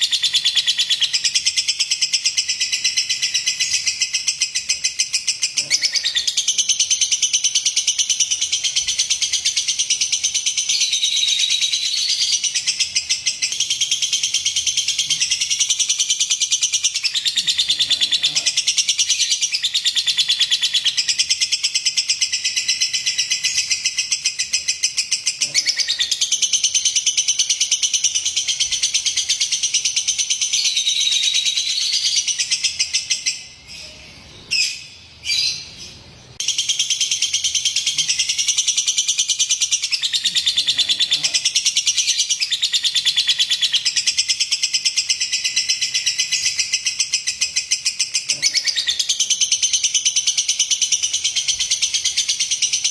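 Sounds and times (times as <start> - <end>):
lovebird chattering trill: 0.0 - 52.9.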